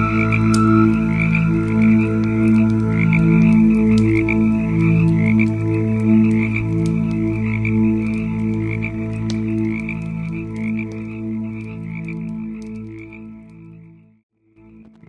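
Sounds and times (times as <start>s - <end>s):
warbling chirping: 0.0s - 5.1s
low droning tones: 0.0s - 9.4s
campfire crackling: 0.0s - 13.0s.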